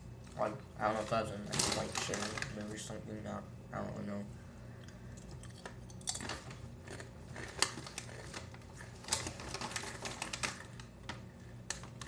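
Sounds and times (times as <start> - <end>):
crunchy chips being chewed: 5.3 - 11.9.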